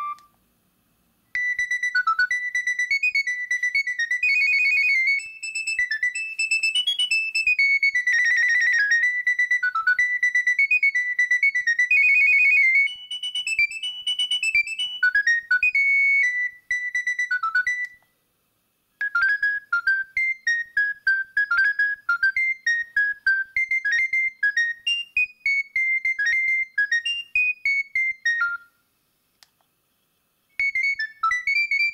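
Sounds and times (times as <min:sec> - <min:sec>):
mobile phone ringtone melody: 0:00.0 - 0:00.2, 0:01.4 - 0:18.0, 0:30.6 - 0:31.9.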